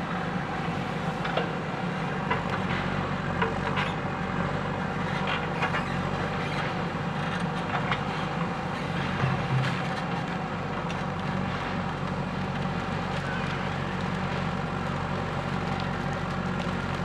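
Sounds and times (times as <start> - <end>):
diesel engine running: 0.0 - 17.0
light cracks and clicks: 9.2 - 17.0.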